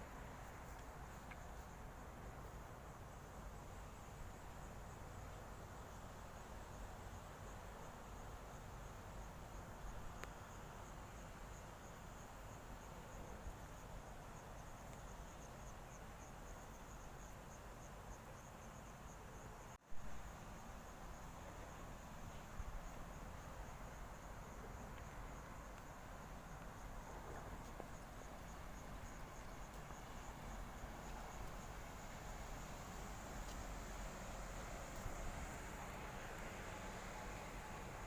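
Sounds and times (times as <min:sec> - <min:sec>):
insects trilling: 0:08.1 - 0:38.0.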